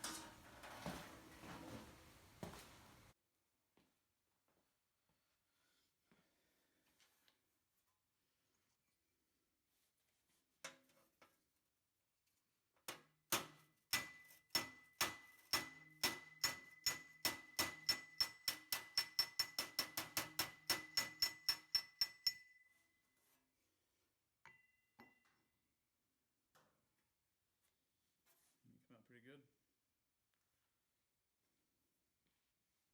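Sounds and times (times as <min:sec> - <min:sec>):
hammer striking sheet metal: 0:13.3 - 0:22.6.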